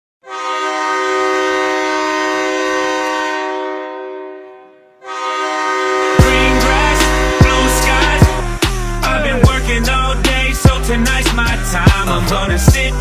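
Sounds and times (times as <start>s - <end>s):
air horn chord: 0.2s - 10.6s
hip-hop track with heavy bass: 6.2s - 13.0s.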